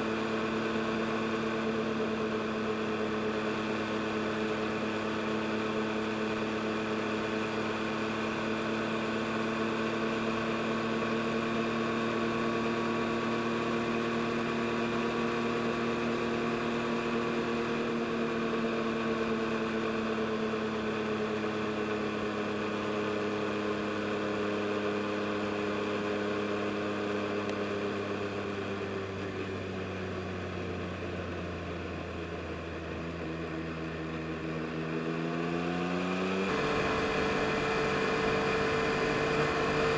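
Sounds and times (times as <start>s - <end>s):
motorcycle engine cruising: 35.8s - 39.9s.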